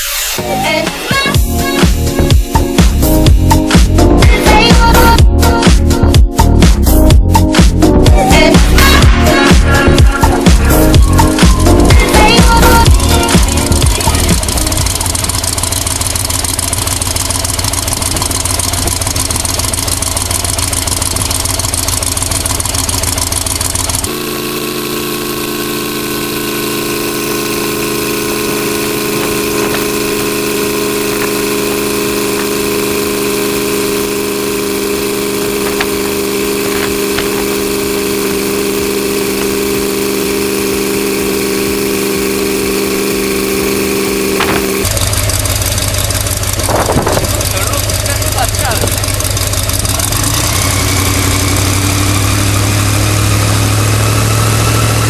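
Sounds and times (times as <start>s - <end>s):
engine hum with pitched tones: 0.0s - 55.0s
wind machine blowing: 24.0s - 45.0s.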